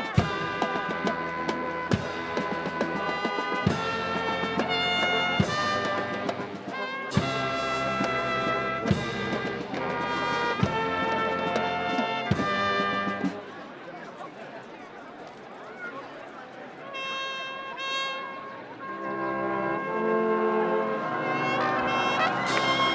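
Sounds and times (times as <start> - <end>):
brass chords: 0.0 - 13.4, 16.9 - 22.9.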